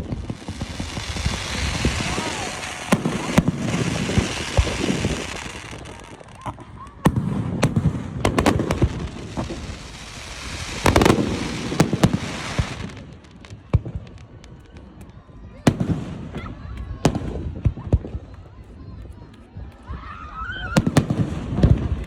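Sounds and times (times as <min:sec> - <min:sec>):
aerial firework shells bursting: 0:00.0 - 0:06.0.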